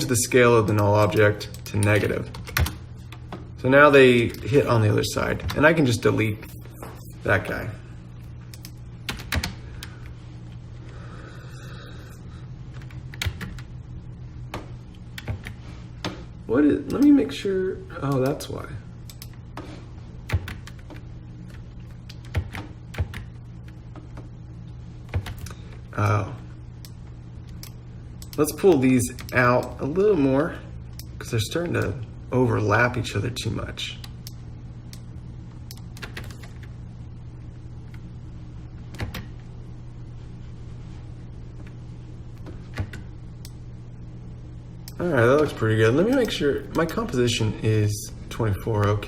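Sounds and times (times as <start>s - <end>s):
low hum: 0.0s - 49.0s
computer clicks: 8.5s - 9.9s, 19.0s - 19.4s, 34.0s - 36.7s, 38.9s - 39.4s
keyboard and mouse clicks: 8.5s - 9.9s, 12.7s - 13.7s, 14.5s - 16.2s, 19.0s - 19.7s, 20.3s - 24.3s, 25.1s - 25.6s, 35.7s - 36.7s, 38.9s - 39.3s.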